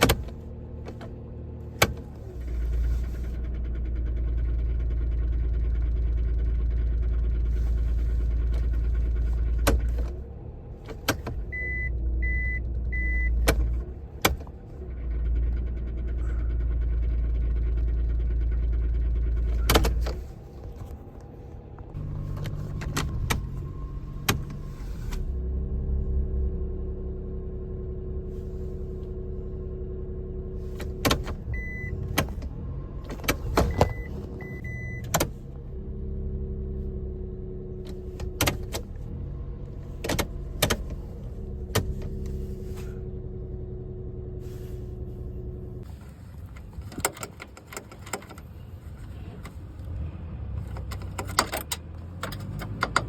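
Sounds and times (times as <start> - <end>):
sharp clicks and knocks: 0.0 - 1.2, 1.8 - 2.2, 8.4 - 10.2, 19.4 - 25.2, 30.8 - 35.4, 37.8 - 39.0, 40.0 - 41.0, 46.4 - 48.6, 50.6 - 53.0
car engine humming: 0.0 - 53.0.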